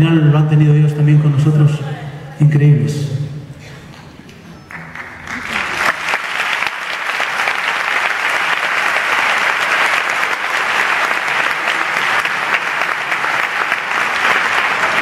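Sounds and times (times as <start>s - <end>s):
audience applauding: 4.6s - 15.0s.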